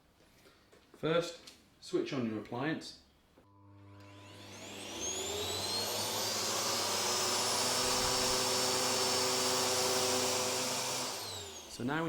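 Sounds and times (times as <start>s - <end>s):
vacuum cleaner motor whine: 3.5s - 12.0s.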